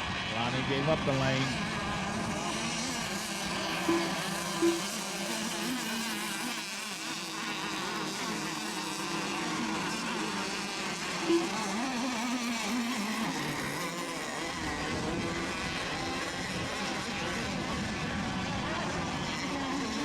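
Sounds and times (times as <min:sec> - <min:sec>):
small boat engines buzzing: 0:00.0 - 0:20.0
brief loud tone: 0:03.8 - 0:05.0, 0:11.2 - 0:11.9.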